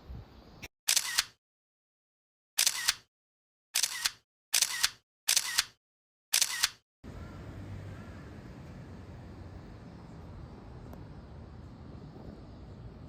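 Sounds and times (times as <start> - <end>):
camera shutter clicks: 0.9 - 1.4, 2.6 - 3.1, 3.8 - 6.8.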